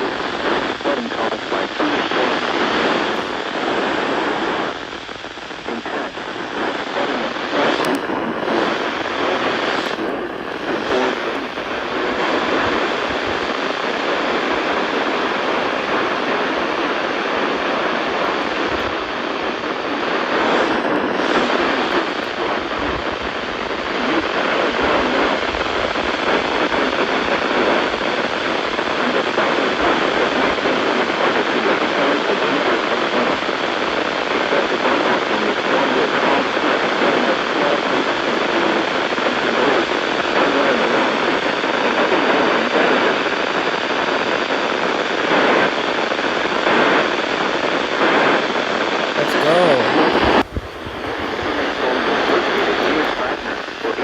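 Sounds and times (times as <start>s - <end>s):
loud steady hiss: 49.1s - 54.0s.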